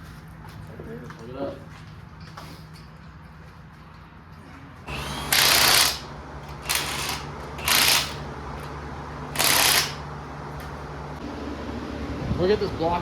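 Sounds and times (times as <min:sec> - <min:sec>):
electric fan humming: 0:04.9 - 0:13.0.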